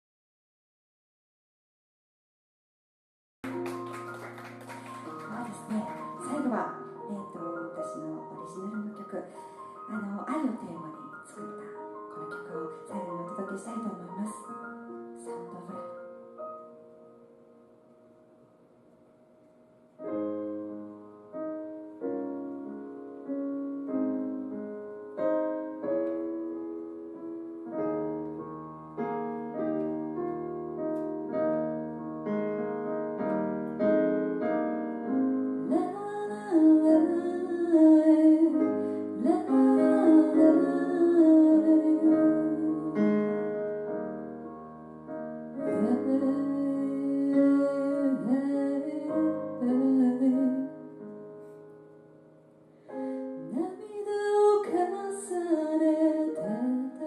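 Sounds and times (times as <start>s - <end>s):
piano ballad chords: 3.4s - 57.0s
woman singing: 5.3s - 9.4s, 10.0s - 14.6s, 35.6s - 43.2s, 45.7s - 50.9s, 53.4s - 57.0s.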